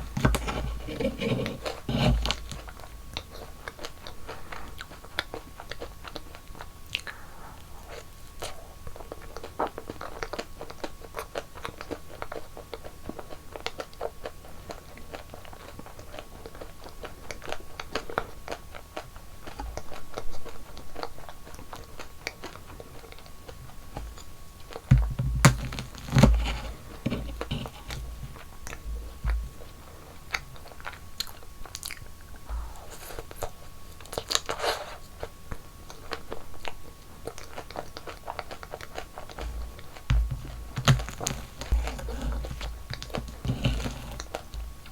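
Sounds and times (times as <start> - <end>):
rustling: 0.0 - 2.8, 24.9 - 29.8, 39.2 - 44.9
crunching and chewing snacks: 0.0 - 44.9
heavy low thumps: 39.4 - 42.9.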